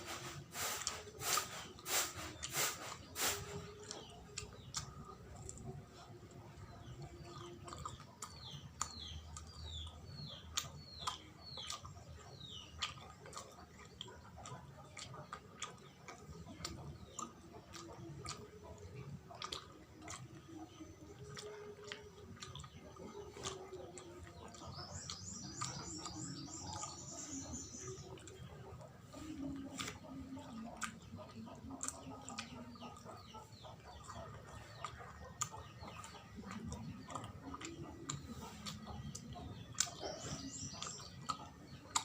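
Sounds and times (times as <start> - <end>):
bird chirping: 0.0 - 42.0
chewing with wet mouth clicks: 0.0 - 42.0.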